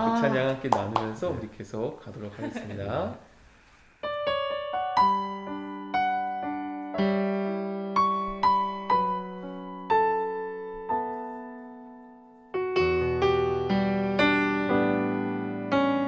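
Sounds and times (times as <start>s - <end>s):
slow piano notes and chords: 4.0s - 16.0s.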